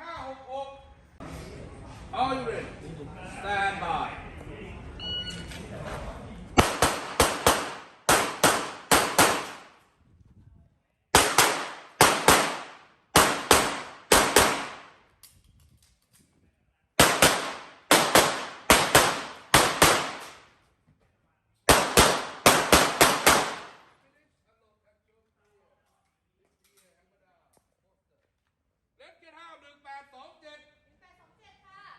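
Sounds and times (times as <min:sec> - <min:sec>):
handgun shots: 0:06.6 - 0:09.6.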